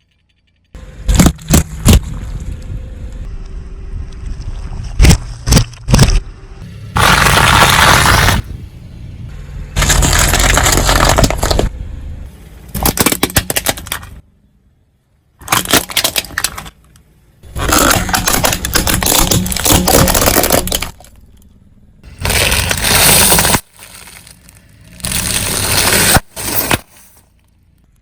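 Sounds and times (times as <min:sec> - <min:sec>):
tyres crushing brittle objects: 0:07.0 - 0:08.5, 0:09.8 - 0:11.7, 0:12.7 - 0:14.2, 0:15.4 - 0:21.4, 0:22.0 - 0:27.5.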